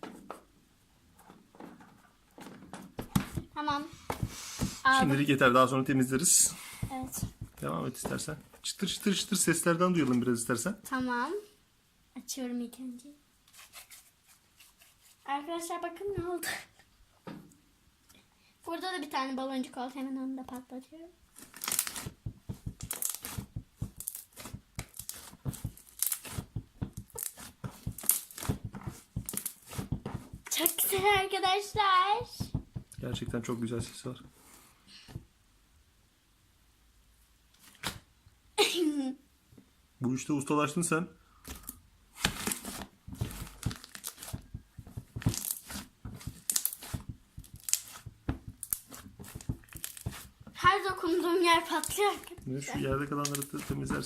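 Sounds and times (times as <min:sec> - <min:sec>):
slime crackling and popping: 0:21.4 - 0:31.2, 0:41.5 - 0:50.3, 0:51.7 - 0:52.3, 0:53.0 - 0:54.0.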